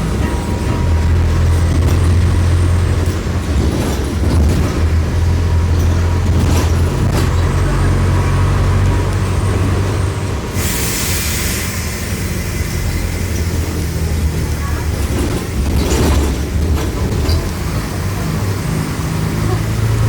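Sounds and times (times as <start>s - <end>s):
diesel bus engine running: 0.0s - 20.0s
hiss: 10.5s - 14.0s.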